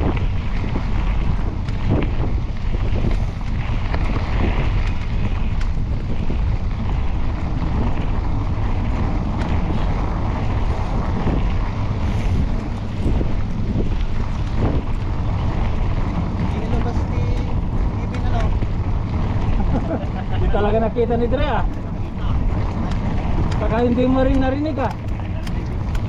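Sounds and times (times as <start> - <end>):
bike clicks and rattles: 0.0 - 26.0
wind buffeting microphone: 0.0 - 26.0.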